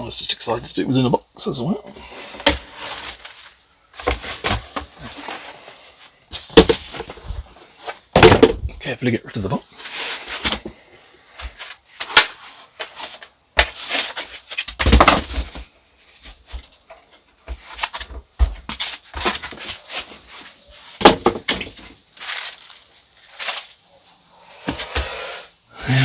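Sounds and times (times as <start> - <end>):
cardboard box rustling and scraping: 2.1 - 8.1, 9.8 - 10.8.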